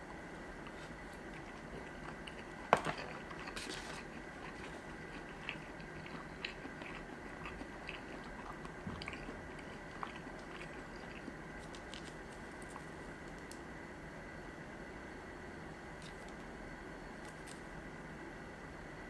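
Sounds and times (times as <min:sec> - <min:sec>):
wet chewing sounds: 0:00.6 - 0:13.6.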